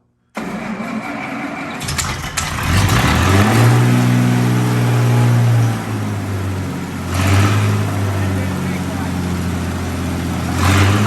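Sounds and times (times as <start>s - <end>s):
engine revving: 0.4s - 11.0s.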